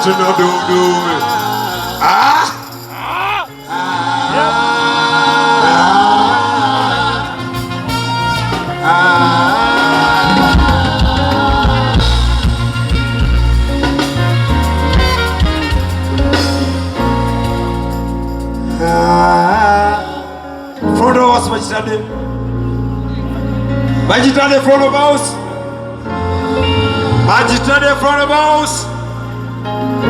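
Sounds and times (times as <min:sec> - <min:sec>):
person singing: 0:00.0 - 0:17.2
band music: 0:00.0 - 0:30.0
heavy bass line: 0:06.9 - 0:20.1.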